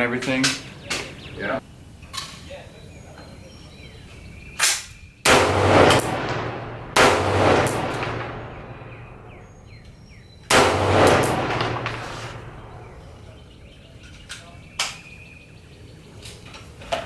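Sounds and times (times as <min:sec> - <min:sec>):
rifle shots: 0:05.3 - 0:13.4.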